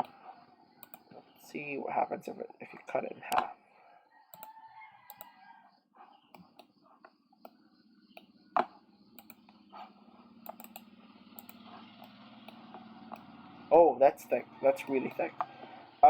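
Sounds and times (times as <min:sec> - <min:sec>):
faint low hum: 0:00.0 - 0:16.0
mouse and keyboard clicks: 0:00.8 - 0:01.1, 0:04.3 - 0:05.3, 0:08.2 - 0:09.6, 0:10.4 - 0:10.8.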